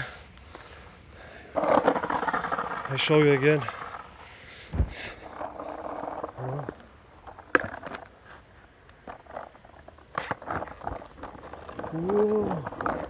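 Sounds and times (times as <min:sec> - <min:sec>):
skateboard wheels rolling: 0:00.0 - 0:13.0
skateboard clacking: 0:01.4 - 0:04.2, 0:05.2 - 0:13.0
skateboard dropping thump: 0:04.7 - 0:05.1.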